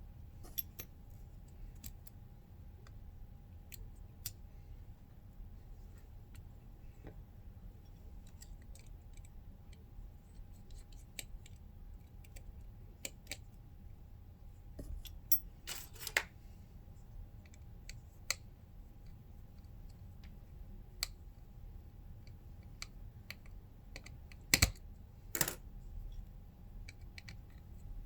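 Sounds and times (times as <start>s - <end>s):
faint steady hum: 0.0s - 28.0s
small tools clicking and tapping: 25.4s - 25.6s.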